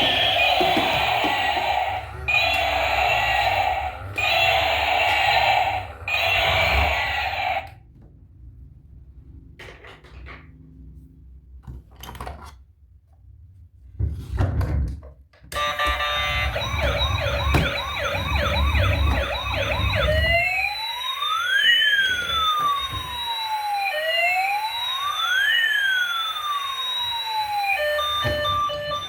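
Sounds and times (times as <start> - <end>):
toy electronic siren: 0.0 - 7.8, 15.6 - 29.0
beeping electronic tune: 15.6 - 20.8.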